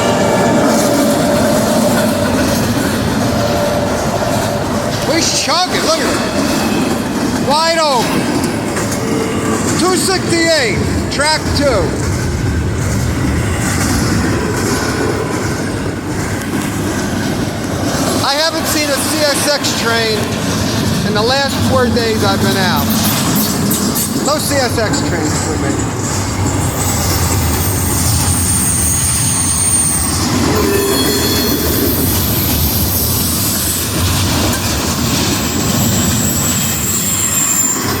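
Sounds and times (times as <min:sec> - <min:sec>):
freight train rumbling past: 0:00.0 - 0:38.0
high wheel squeal: 0:22.0 - 0:38.0.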